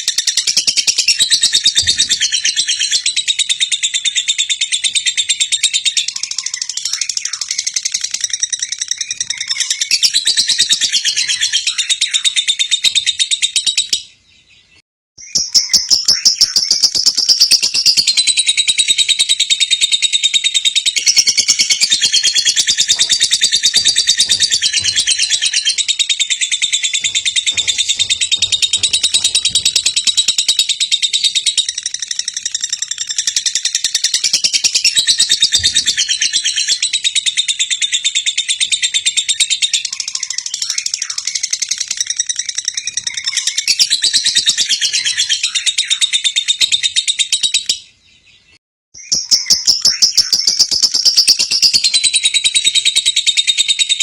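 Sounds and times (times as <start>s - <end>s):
bird chattering trill: 15.2s - 38.4s.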